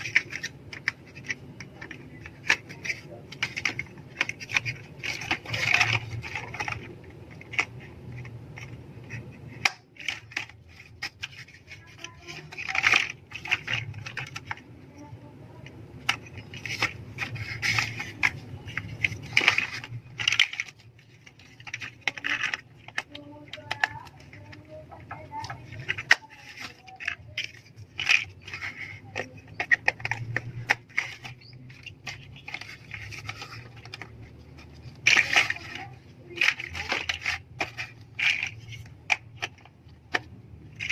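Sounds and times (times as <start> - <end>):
plastic pieces rattling: 0.0 - 40.9
plastic toy bricks clicking: 0.0 - 40.9.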